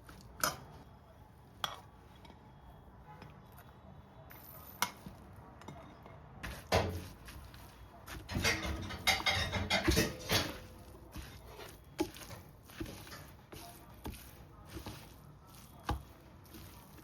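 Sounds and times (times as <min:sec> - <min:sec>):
utensils and dishes clinking: 0:08.2 - 0:14.2.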